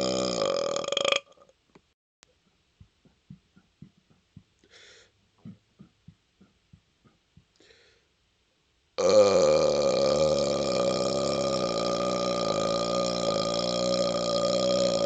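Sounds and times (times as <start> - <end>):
loud long burp: 0.0 - 1.4, 9.0 - 15.0
man gulping air: 2.2 - 7.8
short breaths: 4.6 - 5.2, 7.5 - 8.2.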